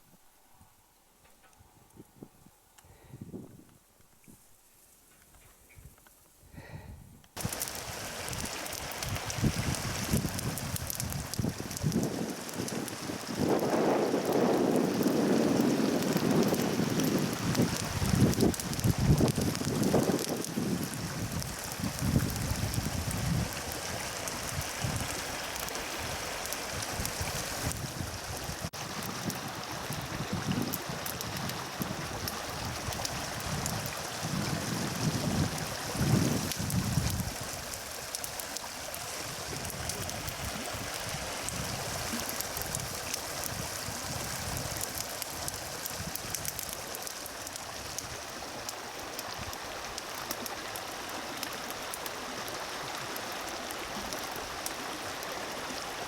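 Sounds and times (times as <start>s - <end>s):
wind buffeting microphone: 1.6s - 4.4s, 6.9s - 25.3s, 26.0s - 37.8s
flowing water rushing: 7.4s - 56.0s.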